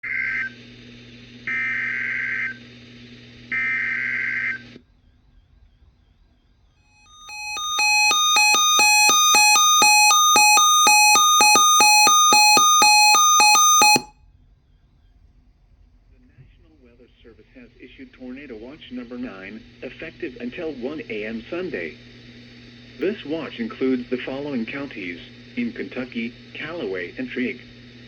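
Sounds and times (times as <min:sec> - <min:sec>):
digital header bursts: 0:07.2 - 0:14.1
pulsing alert tone: 0:07.2 - 0:14.1.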